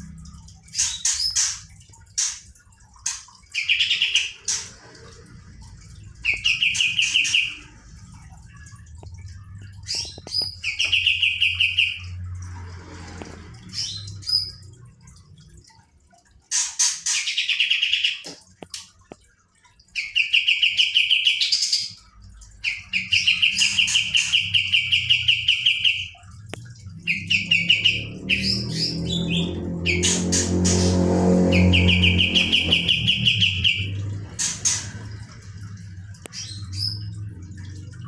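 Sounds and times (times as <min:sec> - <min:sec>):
songbird rattling trills: 0:06.2 - 0:07.8, 0:09.8 - 0:12.2, 0:27.0 - 0:35.0.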